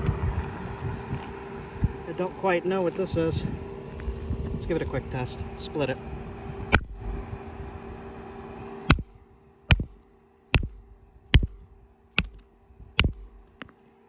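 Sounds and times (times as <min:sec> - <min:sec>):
hammer striking rock: 0:08.9 - 0:09.1, 0:09.7 - 0:10.0, 0:10.6 - 0:10.8, 0:11.4 - 0:11.6, 0:12.2 - 0:12.4, 0:13.0 - 0:13.8.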